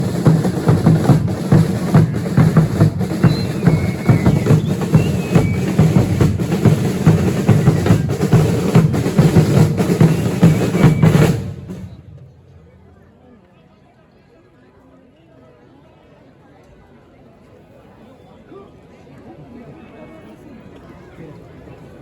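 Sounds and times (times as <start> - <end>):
drums beaten in steady rhythm: 0.0 - 12.7
faint high whistling tones: 2.6 - 8.5, 10.0 - 12.4.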